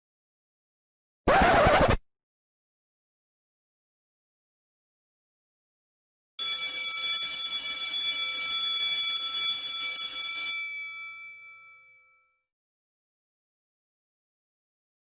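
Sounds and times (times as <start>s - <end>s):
electric alarm bell ringing: 6.4s - 12.4s.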